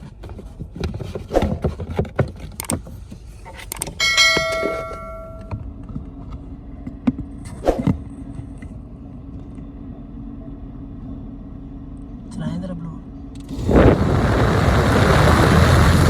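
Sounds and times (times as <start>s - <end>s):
metal piece ringing: 4.0s - 5.6s
steady low hum: 4.5s - 16.0s.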